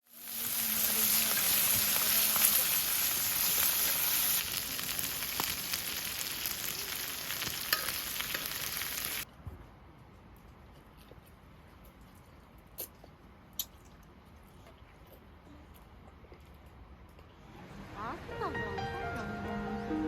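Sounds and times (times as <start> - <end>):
food sizzling in oil: 0.0 - 9.2.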